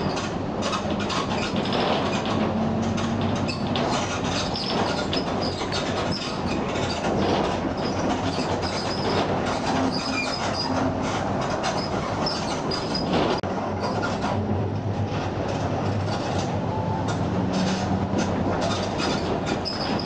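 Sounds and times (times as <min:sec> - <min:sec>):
bus diesel engine: 0:00.0 - 0:20.0
short high squeaks: 0:07.8 - 0:13.2.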